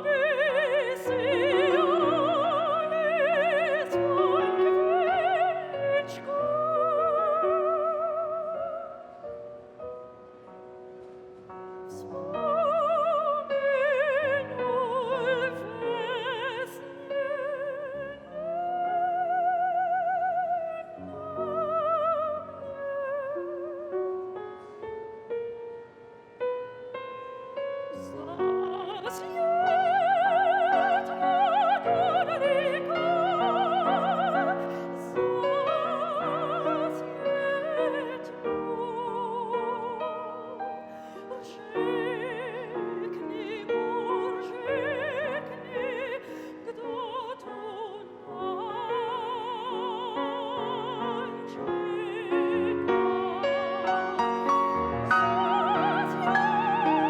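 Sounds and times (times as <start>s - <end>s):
piano accompaniment: 0.0s - 57.0s.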